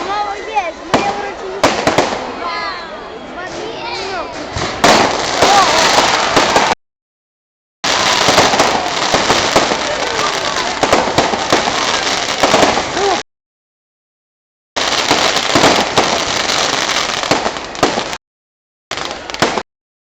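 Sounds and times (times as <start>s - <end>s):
fireworks bangs and crackling: 0.0s - 2.5s, 3.5s - 6.8s, 7.8s - 13.2s, 14.8s - 18.2s, 18.9s - 19.7s.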